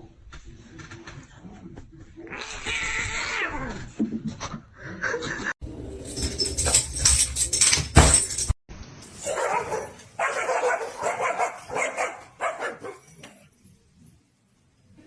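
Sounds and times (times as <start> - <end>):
dog barking: 9.2 - 13.1.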